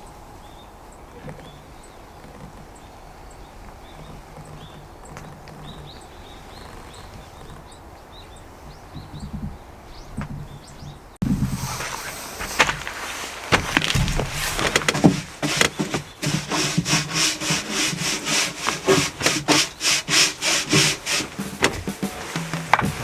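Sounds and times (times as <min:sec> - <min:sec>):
hand tool stroking wood: 0:11.2 - 0:23.0
knocks: 0:11.2 - 0:23.0.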